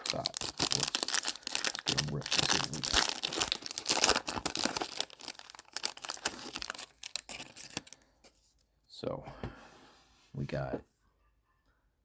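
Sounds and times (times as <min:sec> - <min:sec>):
foil wrapper tearing and crinkling: 0:00.0 - 0:08.0.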